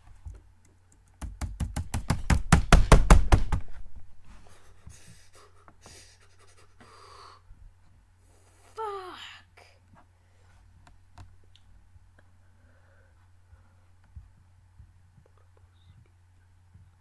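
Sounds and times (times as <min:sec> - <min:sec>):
rapid sharp taps on desk: 0:01.2 - 0:03.8.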